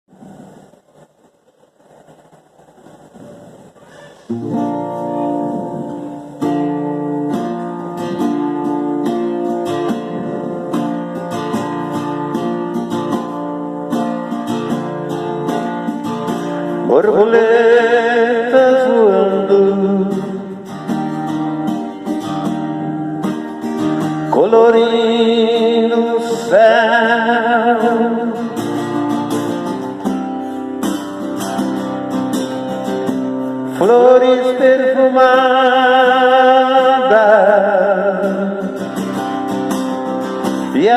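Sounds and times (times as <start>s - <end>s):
acoustic guitar strumming: 3.5s - 40.9s
person singing: 16.7s - 20.9s, 24.0s - 29.0s, 33.7s - 39.4s, 40.4s - 40.9s.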